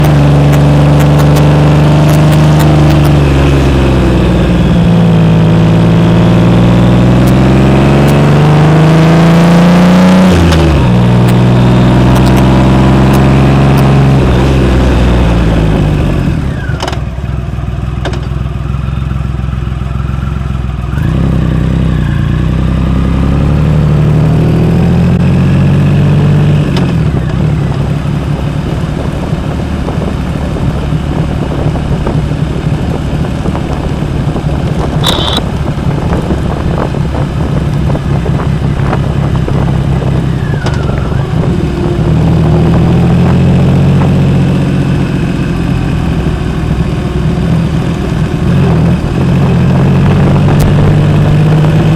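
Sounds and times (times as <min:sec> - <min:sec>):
motorcycle engine accelerating: 0:00.0 - 0:51.9.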